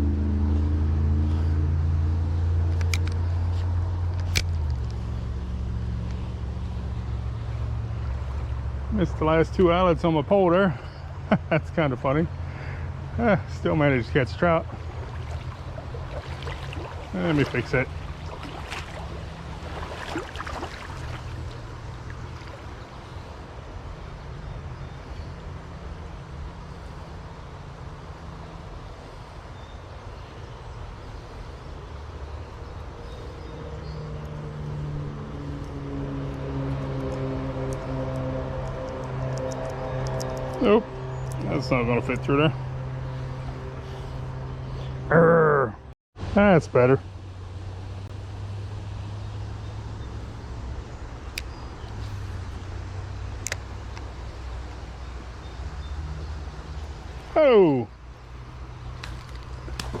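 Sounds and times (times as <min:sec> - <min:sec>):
steady low rumble: 0:00.0 - 0:29.5, 0:30.7 - 0:45.9
background music with sustained chords: 0:12.3 - 0:45.3.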